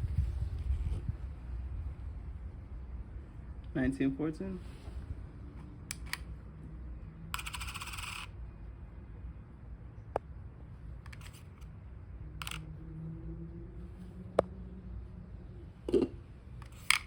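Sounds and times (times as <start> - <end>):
coin bouncing on hard surface: 7.4 - 8.3
coin clicks: 7.4 - 8.3.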